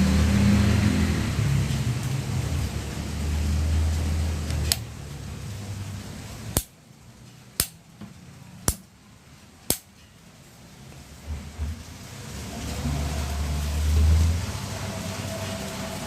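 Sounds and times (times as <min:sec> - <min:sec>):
sharp click: 0:07.6 - 0:07.8.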